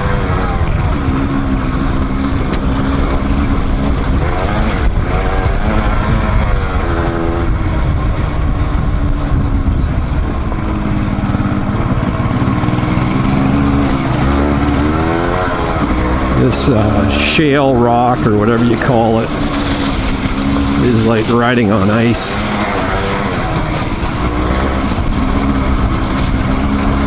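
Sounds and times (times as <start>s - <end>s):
motorcycle engine revving: 0.0s - 27.0s
wind rumble on microphone: 0.0s - 27.0s.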